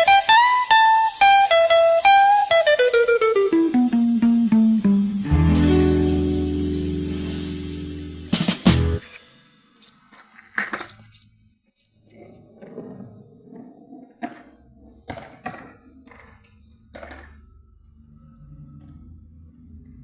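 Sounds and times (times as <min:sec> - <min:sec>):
quiet background music: 0:03.2 - 0:09.0.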